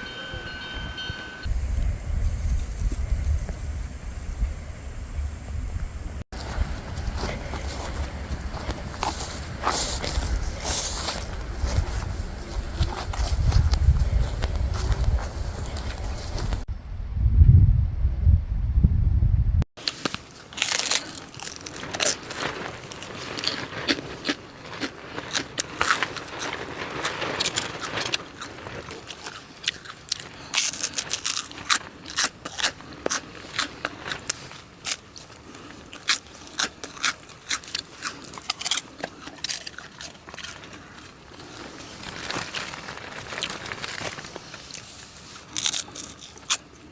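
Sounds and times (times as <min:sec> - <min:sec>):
crunching and chewing: 0:06.4 - 0:16.7, 0:19.8 - 0:46.9.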